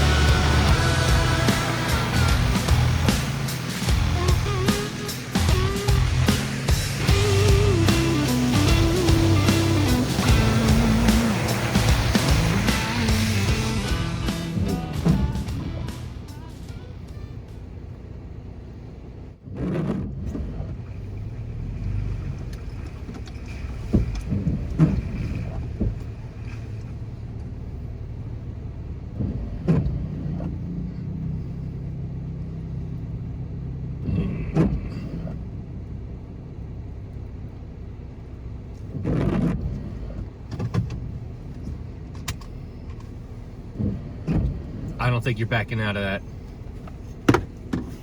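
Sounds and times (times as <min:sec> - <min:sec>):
engine low hum: 0:00.0 - 0:48.0
knocks and clatters: 0:19.4 - 0:27.5, 0:46.5 - 0:48.0.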